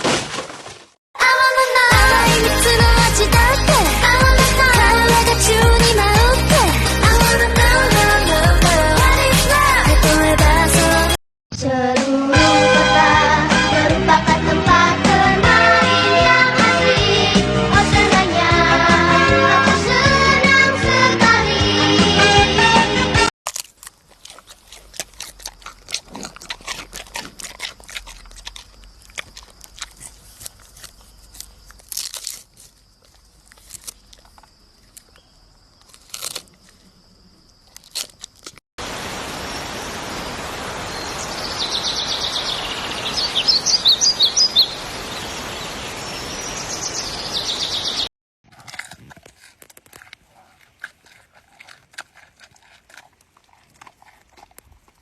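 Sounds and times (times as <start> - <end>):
panda crunching and chewing food: 23.4 - 38.6, 48.4 - 55.0
steady outdoor hiss: 27.0 - 48.1
birds chirping: 39.5 - 48.1.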